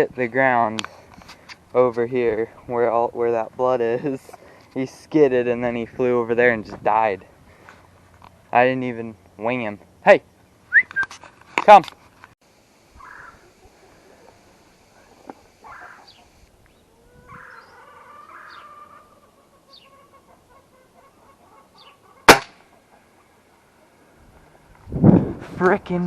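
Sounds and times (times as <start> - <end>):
faint bird chirps: 13.0 - 13.5, 19.4 - 22.2
pellet gun shot: 22.3 - 22.6.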